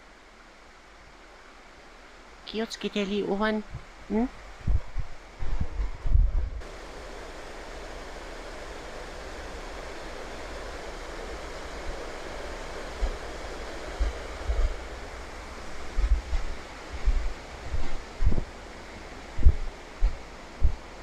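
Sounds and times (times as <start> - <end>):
wind buffeting microphone: 3.6 - 21.0
rushing water: 6.6 - 21.0.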